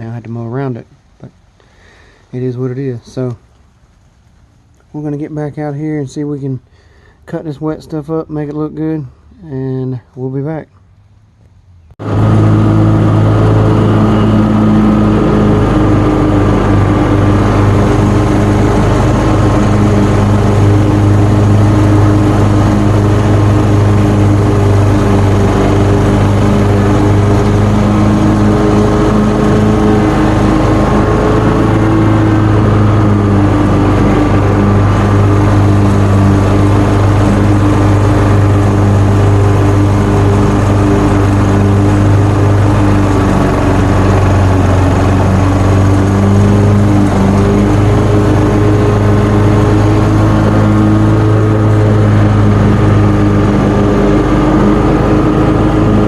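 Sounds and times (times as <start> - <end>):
mower engine cutting grass: 0.0 - 10.9, 11.7 - 56.0.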